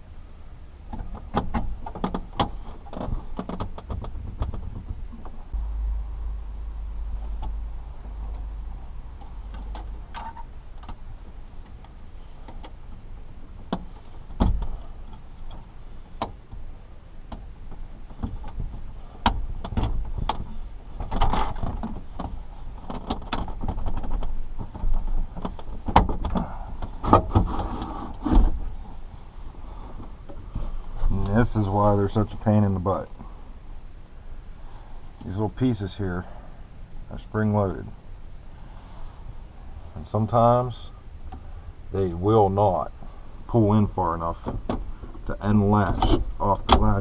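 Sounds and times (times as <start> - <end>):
car radio clicking and rattling: 0.9 - 5.4, 9.1 - 16.6, 17.3 - 27.6, 45.5 - 47.0.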